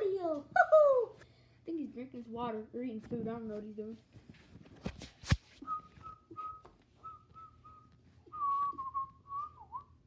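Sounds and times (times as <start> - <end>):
person whistling short notes: 5.6 - 10.0.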